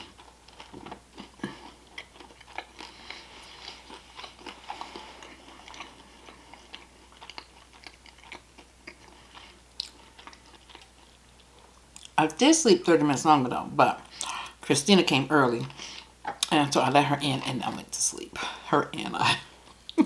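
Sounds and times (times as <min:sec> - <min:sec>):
person chewing crunchy food: 0:00.0 - 0:12.2.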